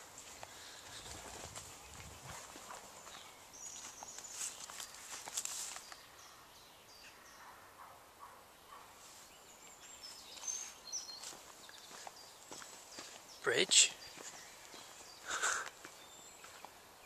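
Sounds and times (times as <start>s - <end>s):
footsteps on path: 0.0s - 6.1s, 9.0s - 16.8s
faint birdsong: 0.0s - 17.0s.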